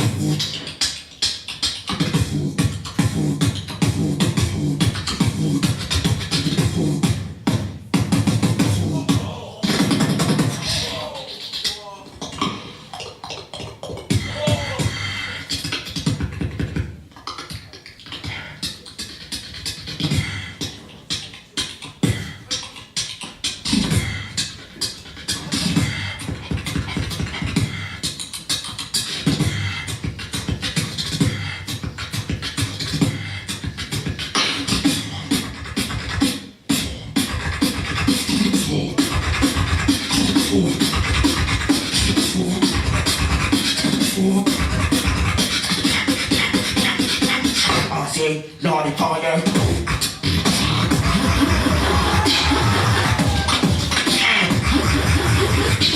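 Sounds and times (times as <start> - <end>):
beatboxing: 0.0 - 55.9
low sliding vocal bass: 8.4 - 12.8, 13.9 - 15.8, 38.3 - 45.4, 47.6 - 55.9.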